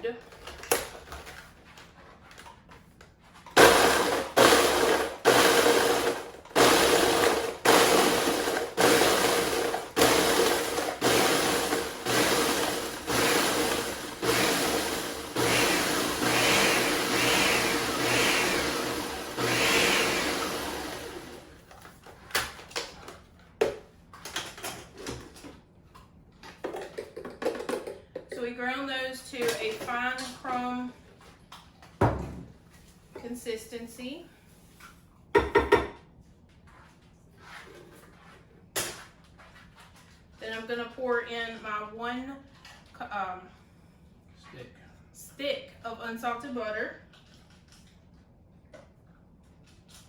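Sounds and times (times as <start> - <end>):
food processor motor bursts: 3.6 - 21.6.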